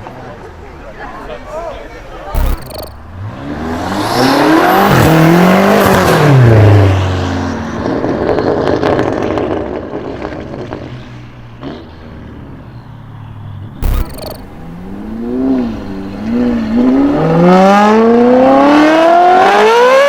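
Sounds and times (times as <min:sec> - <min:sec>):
exhaust crackles and pops: 0:02.4 - 0:03.3, 0:13.8 - 0:16.4.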